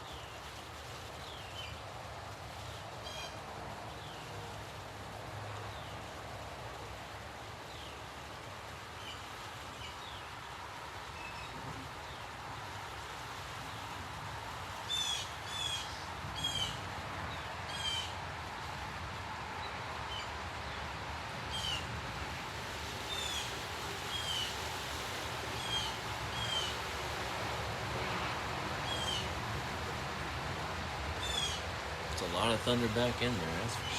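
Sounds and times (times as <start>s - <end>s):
outdoor background noise: 0.0s - 33.9s
bird calling: 31.2s - 31.6s.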